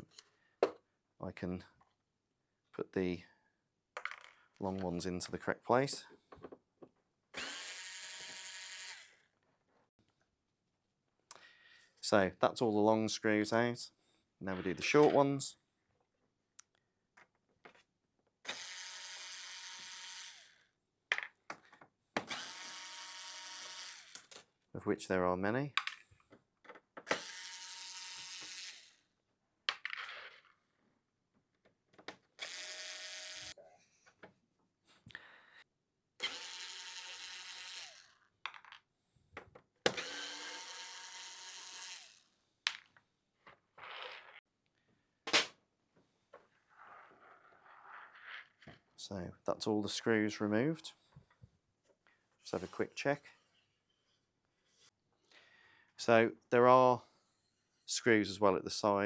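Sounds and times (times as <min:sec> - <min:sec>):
electric screwdriver running: 0:22.3 - 0:24.3, 0:32.4 - 0:33.6, 0:36.2 - 0:38.1, 0:39.9 - 0:42.2.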